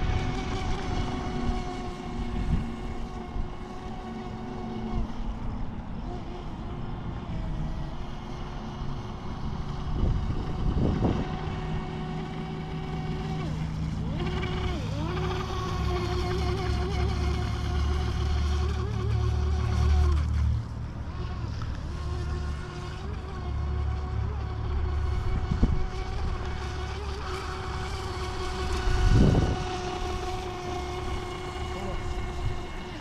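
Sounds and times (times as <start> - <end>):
electric motor whining: 0.0 - 33.0
wind rumbling on microphone: 0.0 - 33.0.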